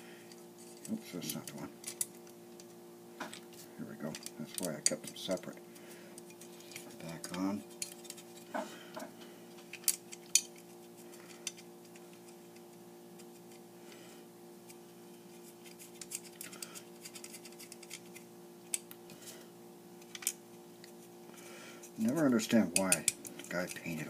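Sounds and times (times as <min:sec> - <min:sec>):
faint steady hum: 0:00.0 - 0:24.0
small metal parts clicking: 0:00.7 - 0:02.4, 0:04.1 - 0:05.5, 0:06.2 - 0:08.4, 0:09.7 - 0:12.4, 0:15.7 - 0:18.9, 0:20.0 - 0:20.4.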